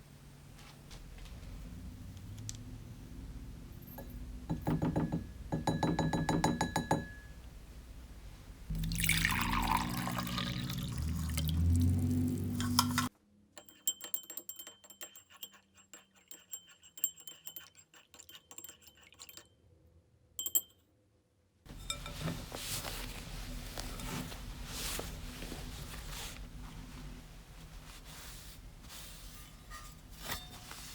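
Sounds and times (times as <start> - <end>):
liquid pouring into a glass: 8.7 - 13.1.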